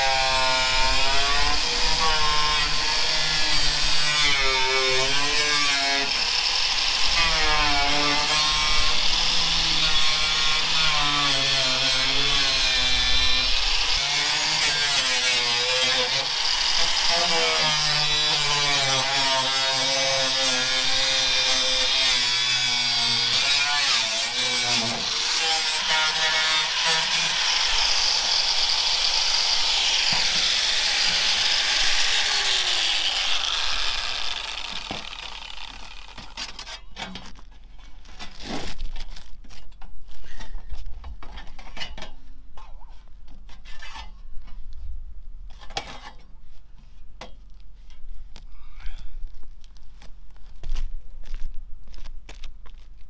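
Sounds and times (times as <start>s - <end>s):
power saw cutting wood: 0.0s - 36.8s.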